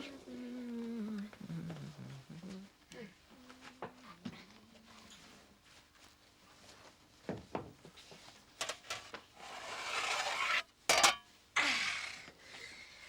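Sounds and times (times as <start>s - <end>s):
baking tins knocking and clinking: 8.6s - 9.1s, 10.9s - 11.3s
loud clatter of tins: 8.6s - 9.1s, 10.9s - 11.2s.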